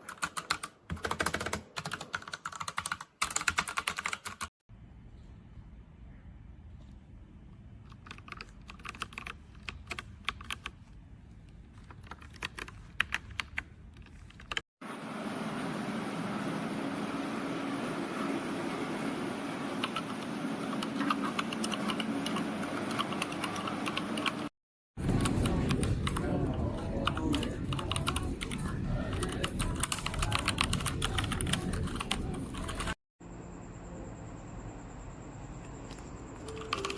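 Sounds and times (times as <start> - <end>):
mechanical keyboard typing: 0.0 - 4.5, 7.8 - 10.8, 11.8 - 14.6, 19.8 - 24.5, 27.0 - 33.0, 36.4 - 36.9.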